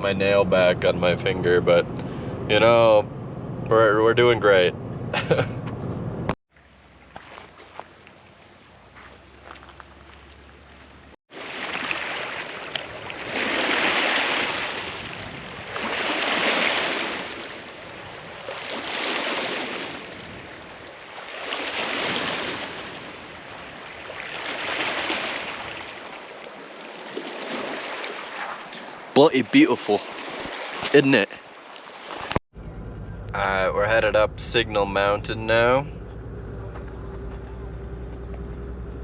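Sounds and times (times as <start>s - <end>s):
waves washing onto shore: 11.3s - 32.4s
low steady hum: 32.6s - 39.0s.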